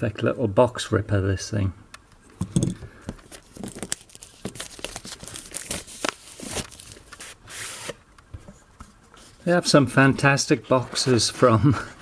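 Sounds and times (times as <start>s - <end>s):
cardboard rustling and tearing: 3.3s - 8.0s.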